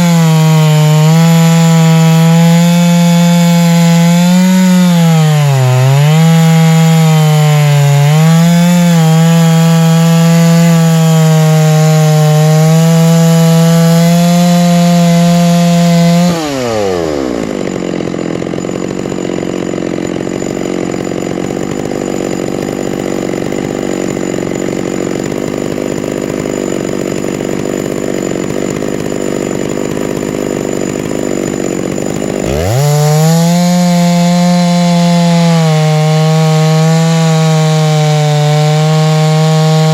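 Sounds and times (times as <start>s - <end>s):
chainsaw mill cutting log: 0.0s - 39.9s.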